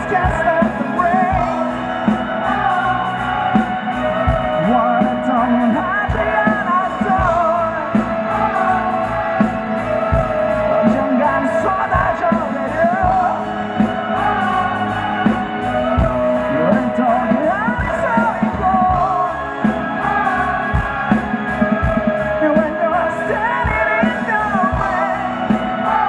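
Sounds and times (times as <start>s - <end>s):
live rock band playing: 0.0s - 26.0s.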